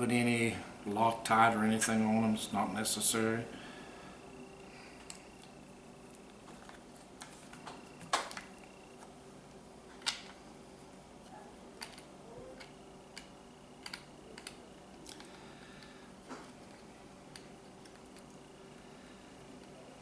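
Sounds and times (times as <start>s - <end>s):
screws clicking and tapping: 11.8s - 15.3s.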